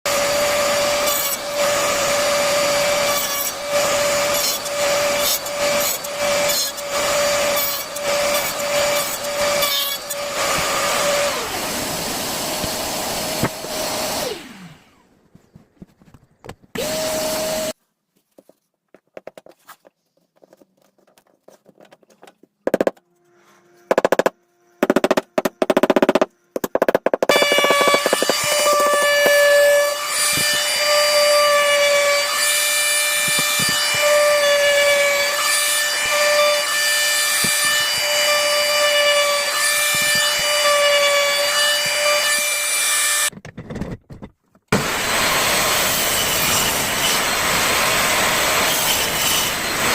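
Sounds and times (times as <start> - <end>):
power tool motor whining: 0.1 - 15.1, 16.7 - 17.8, 27.3 - 43.3, 44.7 - 49.9.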